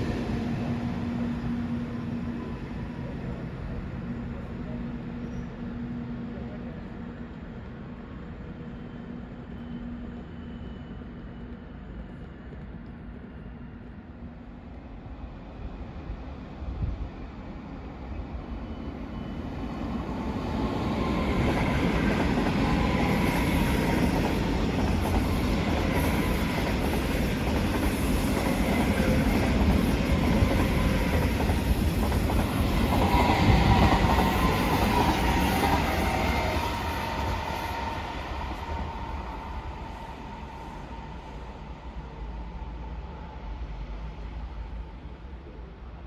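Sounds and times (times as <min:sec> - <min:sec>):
train rumbling past: 0:00.0 - 0:46.0.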